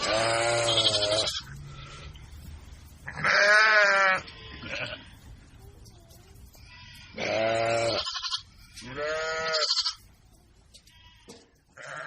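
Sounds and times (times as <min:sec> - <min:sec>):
young goat bleating: 0:00.0 - 0:02.0, 0:03.1 - 0:05.3, 0:06.5 - 0:10.2, 0:10.8 - 0:12.0.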